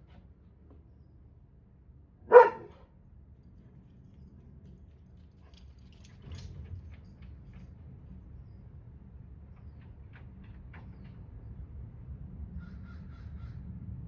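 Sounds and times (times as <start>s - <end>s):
dog barking: 2.3s - 2.9s.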